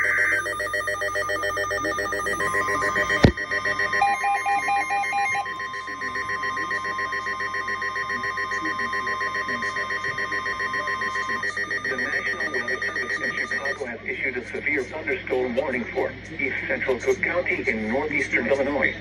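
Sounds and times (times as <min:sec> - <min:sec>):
pulsing electronic ringing: 0:00.0 - 0:13.8
steady alert tone: 0:00.0 - 0:13.8.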